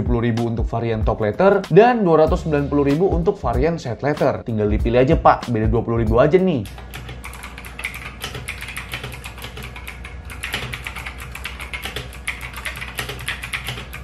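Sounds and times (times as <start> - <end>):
mechanical keyboard typing: 6.6 - 14.0.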